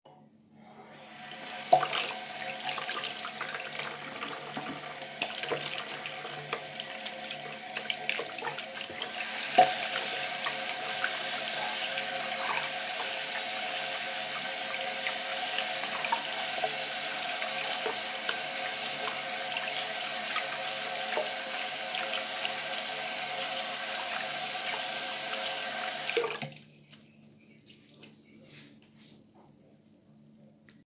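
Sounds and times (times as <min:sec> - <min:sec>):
tap water running into sink: 0:01.0 - 0:26.6.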